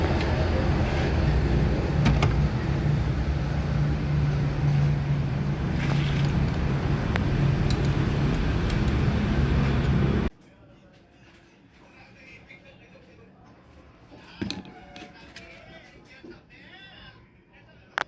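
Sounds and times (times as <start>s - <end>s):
car engine humming: 0.0s - 10.3s.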